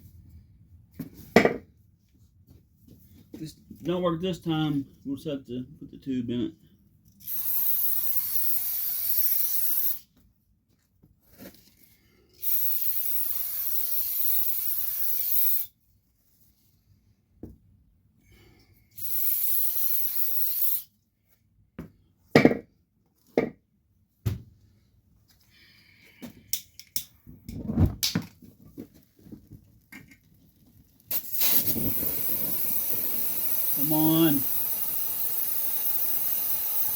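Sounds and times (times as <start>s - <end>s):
aerosol can spraying: 7.3s - 10.0s, 12.4s - 15.7s, 19.0s - 20.9s, 31.1s - 36.9s.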